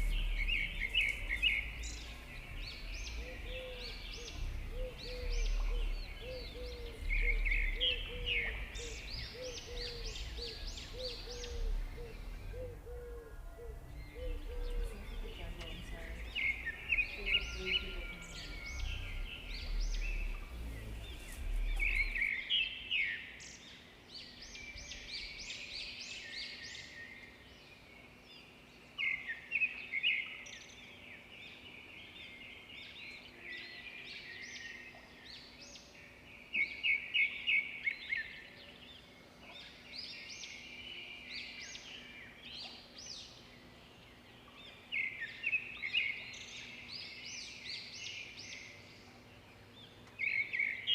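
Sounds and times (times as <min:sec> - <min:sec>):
low rumble: 0:00.0 - 0:22.7
small birds chirping and twittering: 0:00.0 - 0:50.9.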